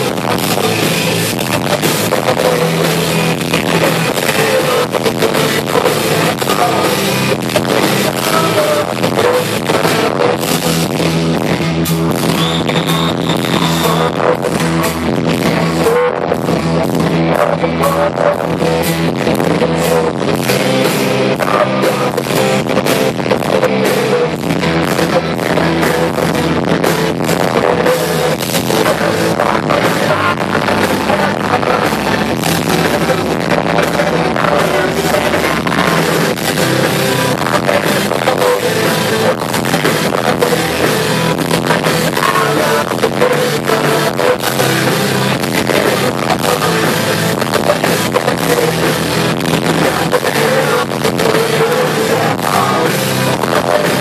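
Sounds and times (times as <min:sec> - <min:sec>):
drum kit: 0:00.0 - 0:54.0
electric guitars: 0:00.0 - 0:54.0.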